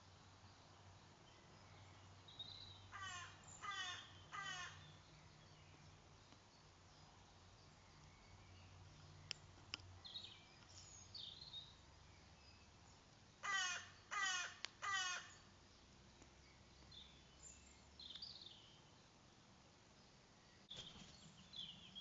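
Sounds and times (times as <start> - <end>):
small birds chirping: 0.0 - 22.0
crow cawing: 2.9 - 4.8, 13.4 - 15.4.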